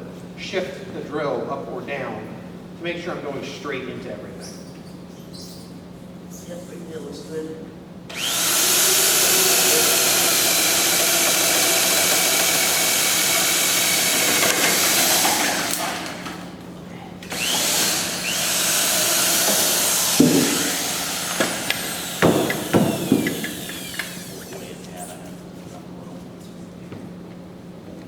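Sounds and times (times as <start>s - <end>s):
power drill boring timber: 8.1s - 16.4s, 17.3s - 24.8s
knocks: 19.4s - 24.1s.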